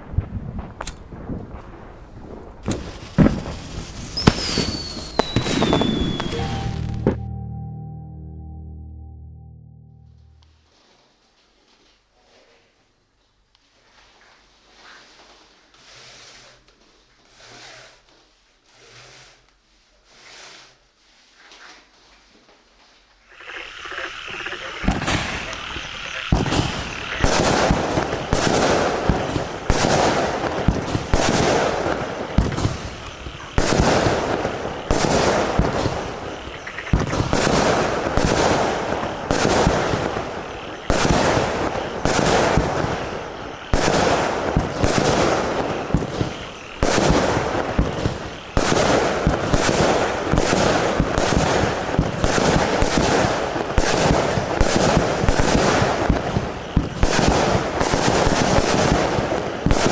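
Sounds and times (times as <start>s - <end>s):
firework shots with crackle: 0.0s - 7.2s, 24.8s - 59.9s.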